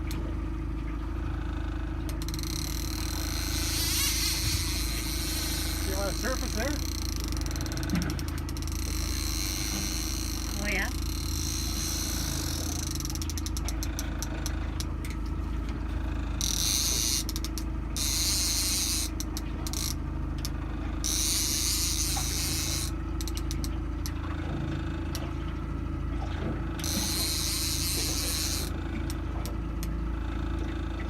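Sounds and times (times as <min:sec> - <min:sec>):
boat engine running: 0:00.0 - 0:31.0
fishing reel clicking and hissing: 0:02.1 - 0:14.9, 0:16.4 - 0:24.1, 0:26.8 - 0:29.9.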